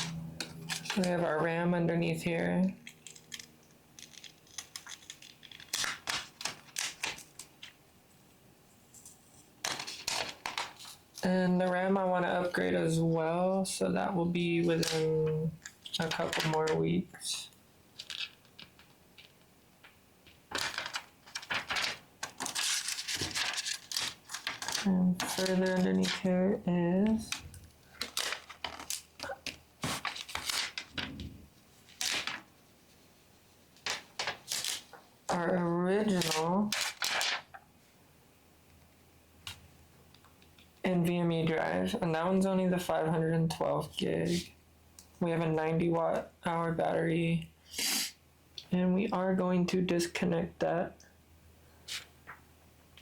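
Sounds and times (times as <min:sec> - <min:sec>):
hands handling laptop internals: 0:02.8 - 0:07.8, 0:18.0 - 0:24.8.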